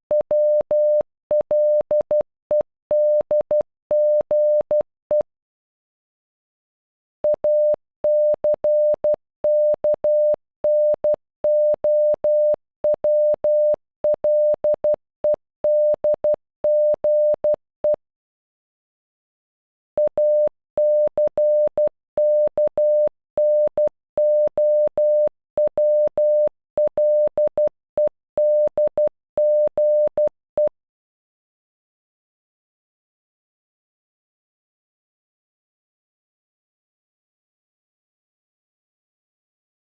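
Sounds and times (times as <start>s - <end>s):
morse code beeps: 7.3s - 15.0s, 15.7s - 18.0s, 20.0s - 30.7s.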